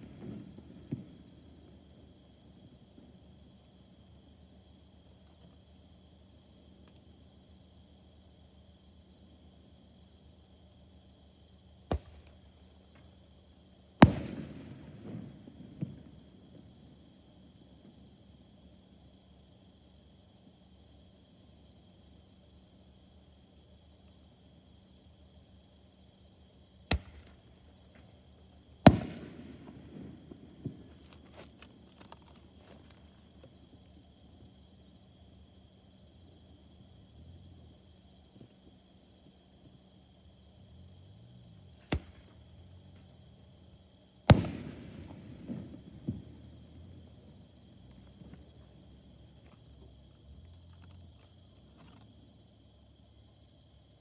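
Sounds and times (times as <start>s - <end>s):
faint distant pops: 0.0s - 1.8s, 14.0s - 16.2s, 26.9s - 28.2s, 28.8s - 34.6s, 44.3s - 48.8s
fireworks bursting: 0.0s - 1.8s, 14.0s - 16.2s, 26.9s - 28.1s, 28.7s - 33.9s, 41.8s - 42.5s, 44.3s - 48.8s
faint firework crackles: 0.0s - 3.8s, 11.9s - 18.1s, 26.8s - 36.8s, 41.2s - 43.4s, 44.2s - 52.1s
crickets chirping: 0.0s - 54.0s
night insects trilling: 0.0s - 54.0s.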